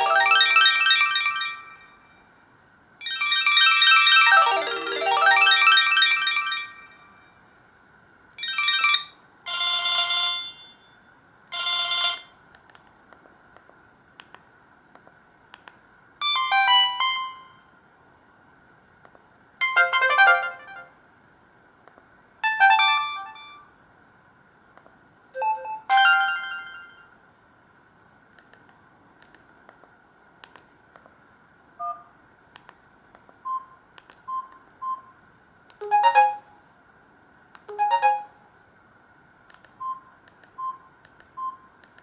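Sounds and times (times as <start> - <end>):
phone ringtone melody: 0.0 - 2.0, 3.0 - 7.2, 8.4 - 10.9, 11.6 - 12.3, 16.2 - 17.6, 19.6 - 20.9, 22.4 - 23.6, 35.8 - 36.5, 37.7 - 38.4
faint steady high tone: 0.0 - 3.4, 8.4 - 12.4, 16.2 - 17.8, 25.4 - 27.2, 37.7 - 38.6.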